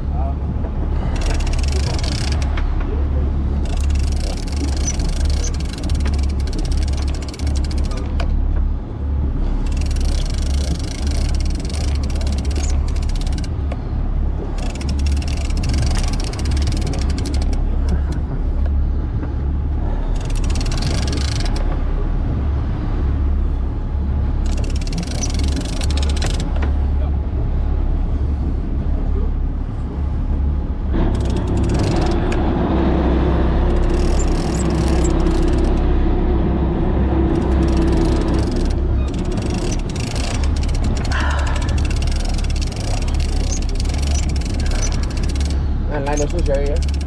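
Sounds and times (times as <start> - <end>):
high steady hum: 0.0 - 28.8, 29.4 - 47.0
boat engine droning: 0.0 - 47.0.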